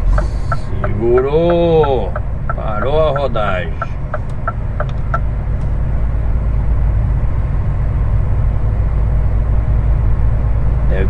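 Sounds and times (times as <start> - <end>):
diesel truck engine drone: 0.0 - 11.0
road noise: 0.0 - 11.0.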